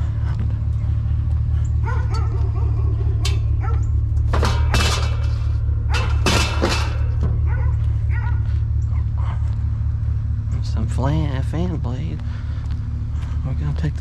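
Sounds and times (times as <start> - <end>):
engine idling: 0.0 - 14.0
dog barking: 1.8 - 3.9, 5.9 - 6.2, 7.4 - 9.1
loud clatters: 3.2 - 7.7.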